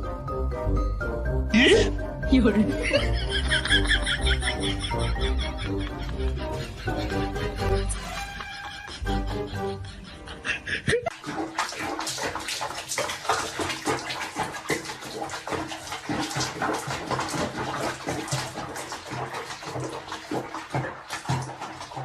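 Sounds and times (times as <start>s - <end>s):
water splashing in a tub: 2.4s - 6.0s, 10.9s - 22.0s.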